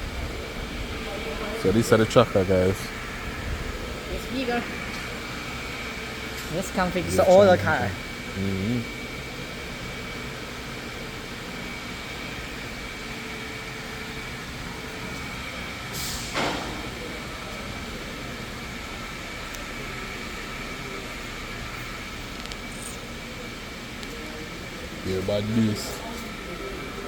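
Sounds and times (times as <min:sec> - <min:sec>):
mechanical hum: 0:00.0 - 0:27.0
thin high whine: 0:00.3 - 0:09.1.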